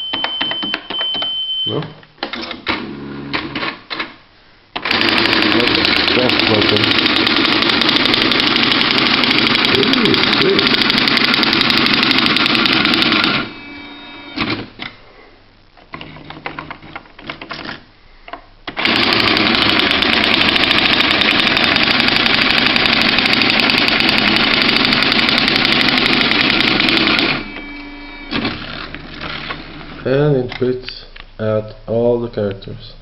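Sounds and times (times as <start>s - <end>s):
typewriter printing chatter: 4.8s - 13.5s, 18.8s - 27.6s.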